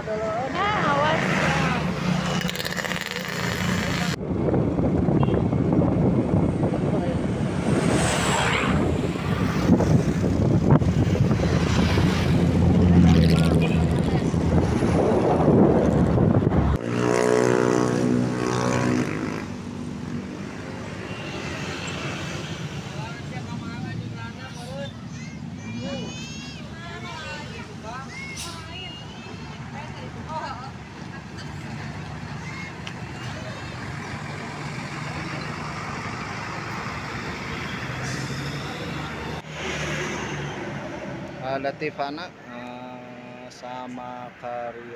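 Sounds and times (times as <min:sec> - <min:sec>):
wind and road rumble: 0:00.0 - 0:42.4
bus diesel engine running: 0:22.7 - 0:39.4.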